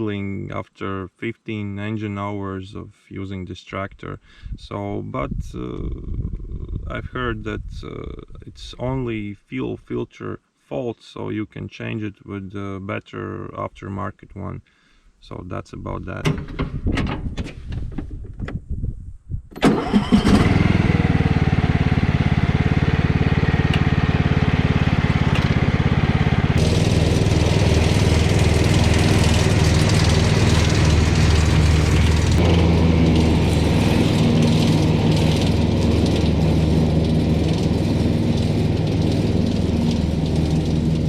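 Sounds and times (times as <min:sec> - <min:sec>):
tractor engine cranking and running: 0:19.6 - 0:41.0.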